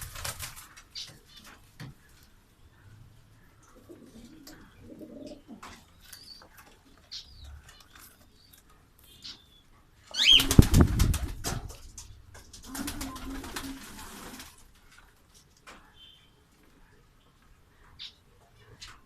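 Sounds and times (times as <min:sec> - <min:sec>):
wing flapping: 0:00.0 - 0:00.9, 0:10.2 - 0:14.7
pigeons cooing: 0:03.6 - 0:05.8.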